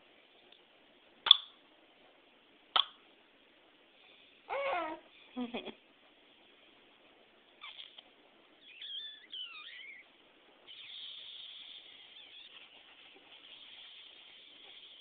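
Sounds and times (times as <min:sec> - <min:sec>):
high-pitched squeaky vocal noises: 0:04.5 - 0:05.1, 0:07.6 - 0:08.0, 0:08.6 - 0:10.1, 0:10.7 - 0:15.0.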